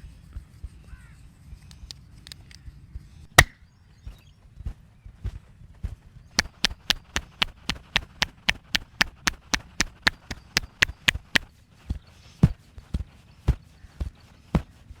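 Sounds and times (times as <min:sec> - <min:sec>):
wooden sticks tapping on body: 0:06.4 - 0:15.0.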